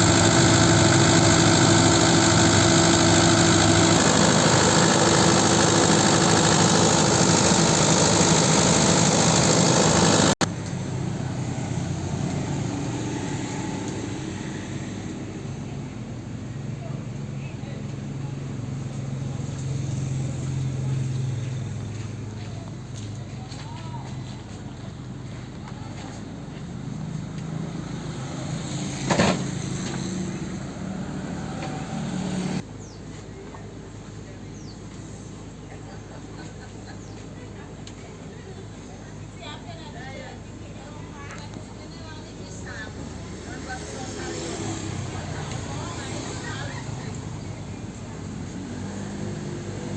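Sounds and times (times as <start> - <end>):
loud clatter: 0.0 - 10.4
diesel generator engine running: 0.0 - 15.4, 24.3 - 32.6.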